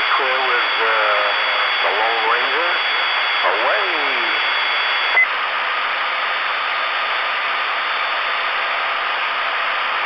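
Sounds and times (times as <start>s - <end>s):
radio static hiss: 0.0s - 5.3s
short beep: 4.5s - 5.3s.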